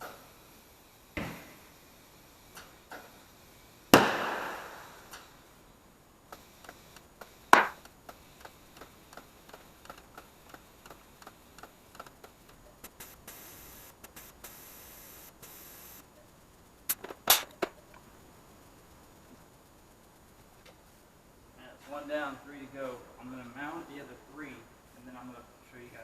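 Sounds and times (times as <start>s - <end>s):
high air hiss: 0.0s - 26.0s
sharp snaps: 6.3s - 15.6s, 16.9s - 18.0s
sharp click: 16.9s - 17.7s.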